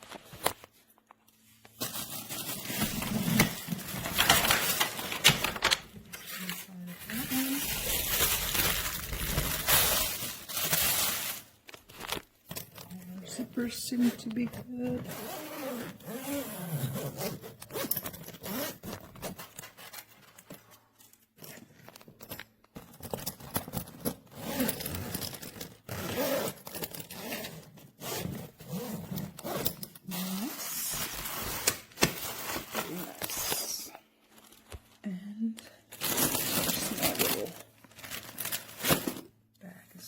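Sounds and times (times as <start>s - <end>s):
suitcase zippers being pulled: 15.0s - 19.4s, 24.3s - 30.7s.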